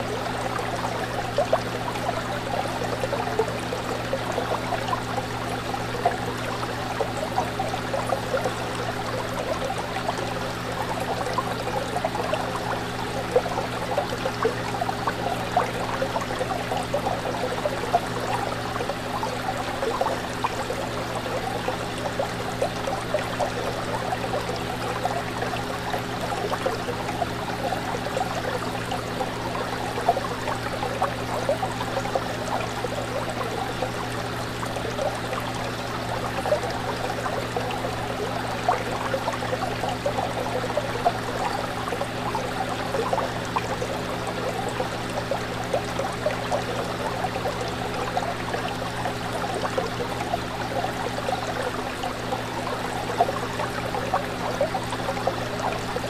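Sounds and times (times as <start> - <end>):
aquarium water trickling: 0.0 - 56.0
small splashes and bubbles: 0.0 - 56.0.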